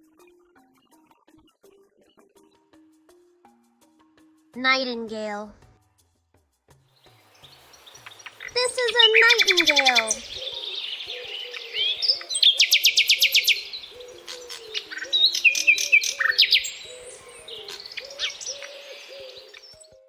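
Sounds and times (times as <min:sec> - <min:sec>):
nightingale singing: 0:07.0 - 0:20.0.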